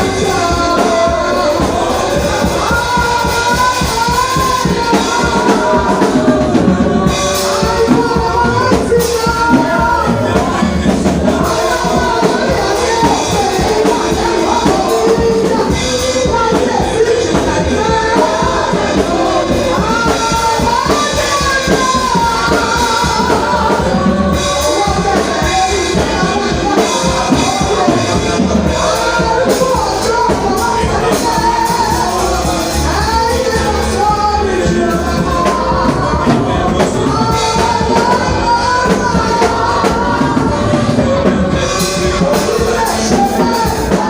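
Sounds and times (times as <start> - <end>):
band with drums: 0.0 - 44.0
voices singing worship music: 0.0 - 44.0.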